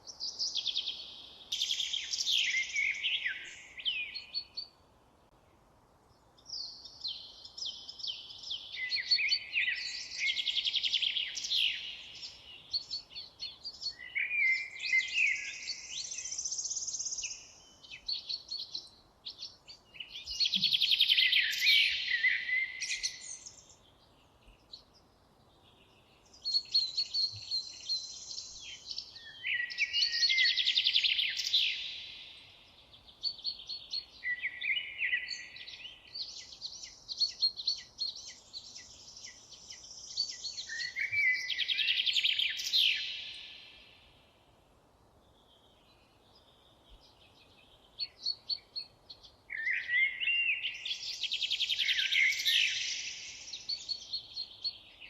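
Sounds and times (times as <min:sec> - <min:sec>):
songbirds singing: 0:00.0 - 0:55.0.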